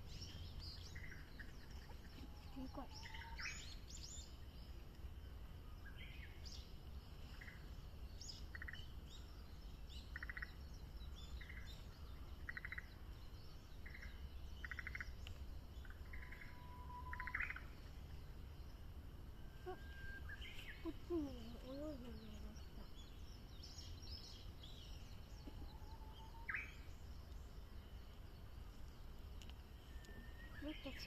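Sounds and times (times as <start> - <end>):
small birds chirping: 0.0 - 31.0
bird trilling: 16.1 - 17.7
bird long whistle and flourish: 16.2 - 17.6, 19.4 - 20.7, 29.9 - 30.6.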